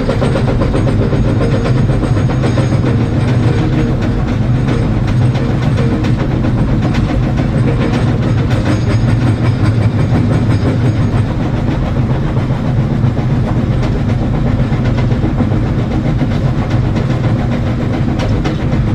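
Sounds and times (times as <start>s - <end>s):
rock clanking against steel bucket: 0.0s - 11.8s
diesel engine running under load: 0.0s - 18.9s.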